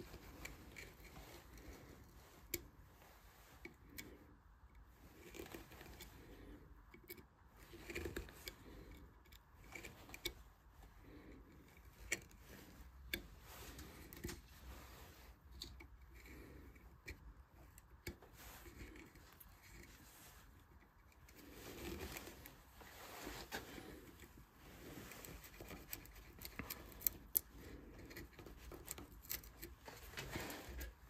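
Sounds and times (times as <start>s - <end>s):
carving tools on wood: 0.0s - 31.0s.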